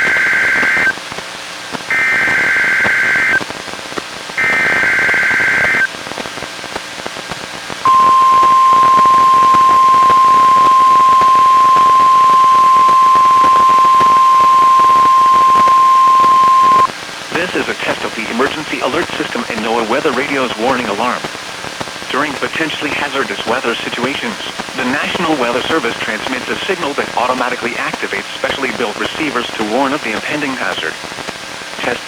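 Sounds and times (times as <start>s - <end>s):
steady warning alarm tone: 0.0s - 0.9s, 1.9s - 3.4s, 4.4s - 5.9s, 7.9s - 16.9s
radio hiss: 0.0s - 1.0s, 1.7s - 3.6s, 4.4s - 5.9s, 7.9s - 32.0s
warbling digital data bursts: 1.9s - 3.4s, 4.4s - 5.9s, 7.9s - 16.9s.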